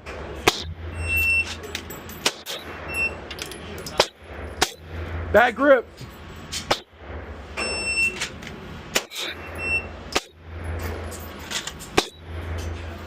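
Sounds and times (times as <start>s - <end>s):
short high-pitched beep: 1.0s - 1.5s, 2.9s - 3.2s, 7.6s - 8.2s, 9.4s - 10.0s
pistol shots: 2.2s - 2.9s.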